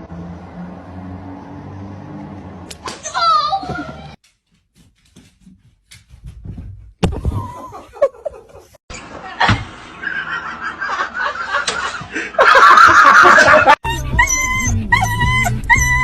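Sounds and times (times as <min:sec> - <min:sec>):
people laughing: 0:07.4 - 0:13.8.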